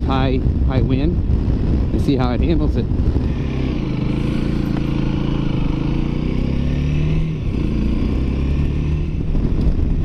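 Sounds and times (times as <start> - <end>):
wind rush: 0.0 - 10.0
motorcycle engine accelerating: 1.3 - 10.0.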